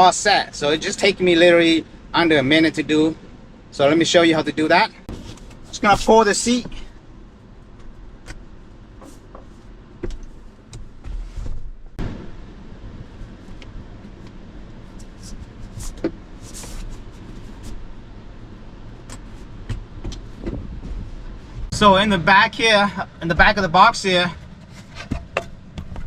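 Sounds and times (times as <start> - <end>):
rustle of handling: 13.0 - 21.7.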